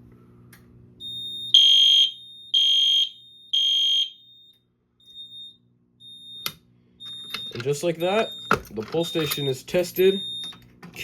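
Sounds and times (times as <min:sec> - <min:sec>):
fire alarm horn blasts: 0:01.0 - 0:06.5.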